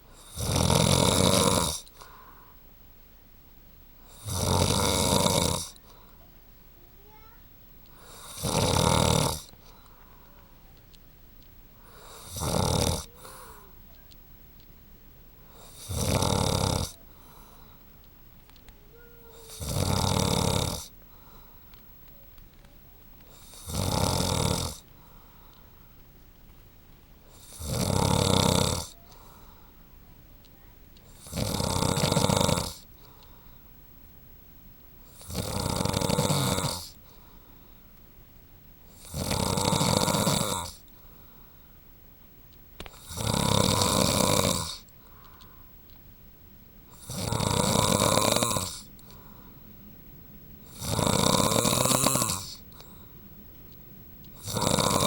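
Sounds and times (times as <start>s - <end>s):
man snoring: 0.1s - 2.0s, 4.1s - 5.8s, 8.0s - 9.5s, 11.8s - 13.6s, 15.5s - 17.0s, 19.4s - 20.9s, 23.3s - 24.8s, 27.3s - 29.2s, 31.2s - 32.9s, 35.1s - 37.0s, 38.9s - 40.8s, 42.9s - 44.9s, 46.9s - 49.4s, 50.7s - 52.9s, 54.4s - 55.0s.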